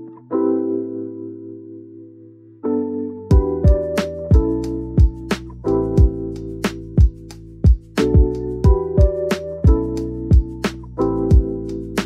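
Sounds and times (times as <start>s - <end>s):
steady drum beat: 3.3s - 5.4s, 6.0s - 11.5s.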